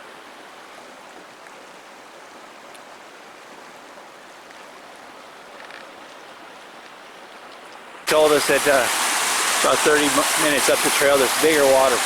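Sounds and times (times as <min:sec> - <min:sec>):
creek rushing over rocks: 0:07.8 - 0:12.0.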